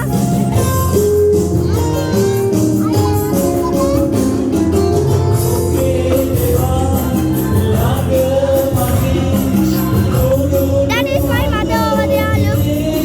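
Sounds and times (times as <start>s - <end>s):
regular drum beat: 0.0s - 13.0s
steady bass line: 0.0s - 13.0s
tambourine-like percussion: 0.0s - 13.0s
person singing: 5.4s - 13.0s.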